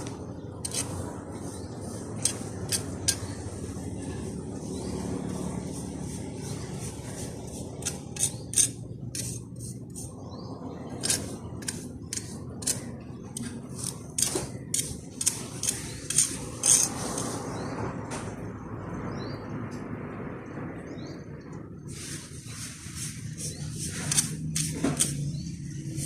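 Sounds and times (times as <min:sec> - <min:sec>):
metal tool scraping concrete: 0:00.6 - 0:03.4, 0:06.5 - 0:10.1, 0:11.0 - 0:17.4, 0:22.9 - 0:26.0.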